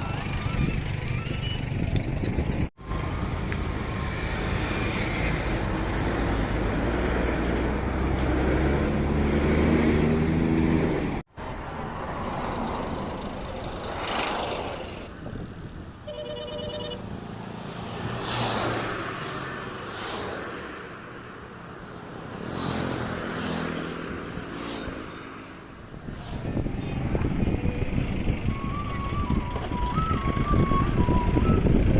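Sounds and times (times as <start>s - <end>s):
road traffic passing: 0.0s - 31.9s
high-pitched beeping: 16.1s - 17.1s.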